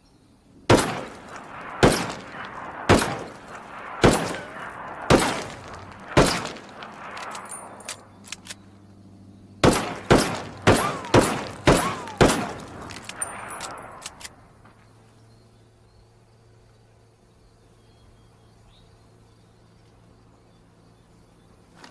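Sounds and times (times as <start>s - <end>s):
revolver shots echoing: 0.7s - 7.9s, 9.6s - 14.0s
light metallic clicks: 5.7s - 8.7s, 12.6s - 14.4s.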